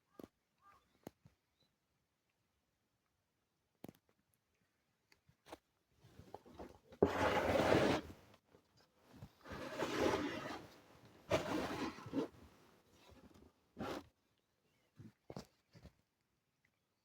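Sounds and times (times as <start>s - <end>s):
scraping and rubbing handling noise: 6.5s - 8.2s, 9.1s - 14.1s.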